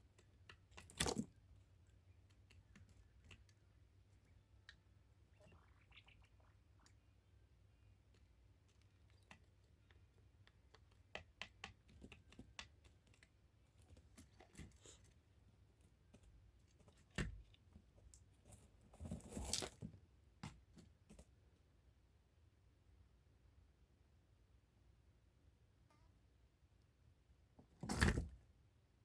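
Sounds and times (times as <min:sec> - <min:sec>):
scratching rustle: 0:18.0 - 0:19.9.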